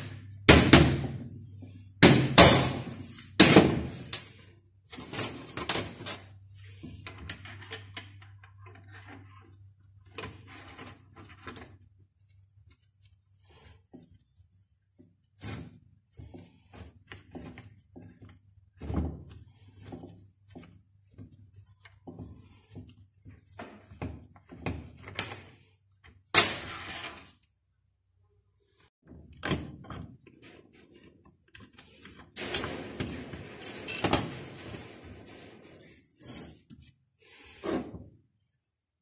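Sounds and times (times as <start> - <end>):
metal parts knocking and clinking: 25.0 - 25.6, 29.3 - 36.1
metal scraping: 32.4 - 36.7.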